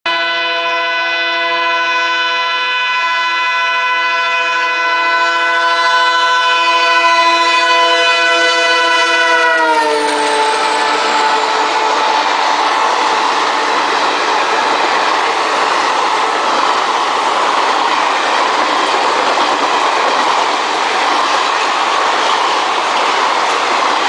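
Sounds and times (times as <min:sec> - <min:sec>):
locomotive horn blast: 0:00.0 - 0:13.8
train noise: 0:00.1 - 0:24.0.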